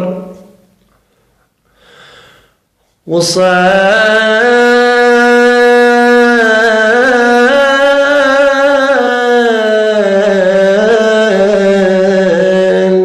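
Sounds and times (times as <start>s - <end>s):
man singing long held note: 0.0s - 0.5s, 3.1s - 13.0s
faint breath: 1.0s - 3.0s.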